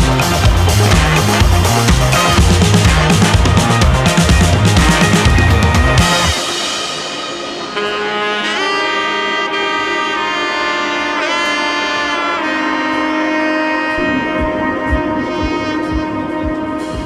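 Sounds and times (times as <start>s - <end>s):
saxophone music: 0.0s - 17.0s.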